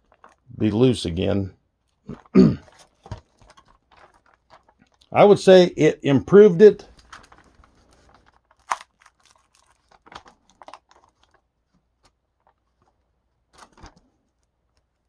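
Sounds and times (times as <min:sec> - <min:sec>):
plastic film crinkling: 0:00.0 - 0:05.6, 0:06.6 - 0:15.0.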